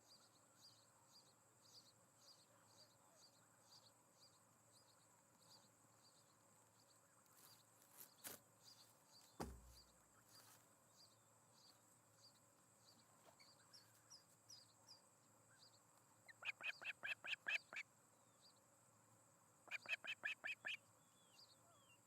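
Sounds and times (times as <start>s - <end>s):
low thump: 9.4s - 9.8s
sharp knock: 9.4s - 9.8s.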